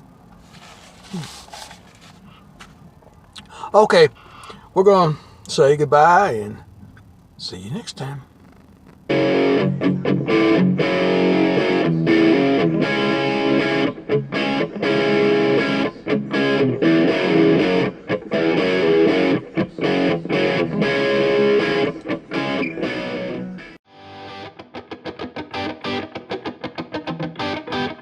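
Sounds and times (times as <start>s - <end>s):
guitar-led music: 8.3s - 28.0s.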